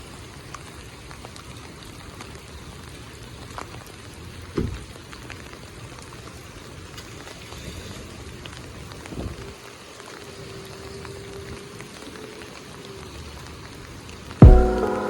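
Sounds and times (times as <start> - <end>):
heavy rain falling: 0.0 - 15.0.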